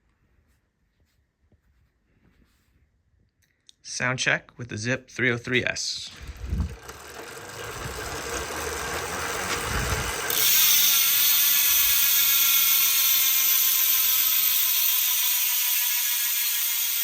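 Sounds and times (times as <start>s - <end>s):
bicycle hub ratchet buzzing: 6.2s - 17.0s.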